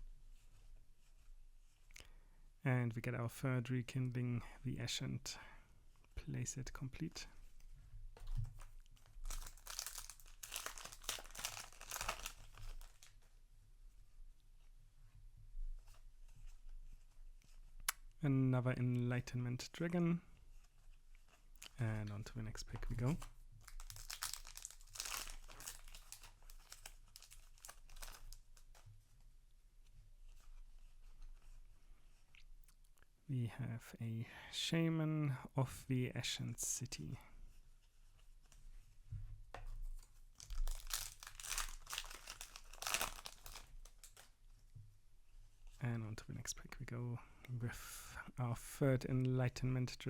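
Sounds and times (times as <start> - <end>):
cards being handled: 8.2 - 13.2, 22.7 - 28.9, 39.8 - 44.3
foil wrapper crinkling: 8.6 - 13.1, 23.6 - 28.8, 40.4 - 44.3.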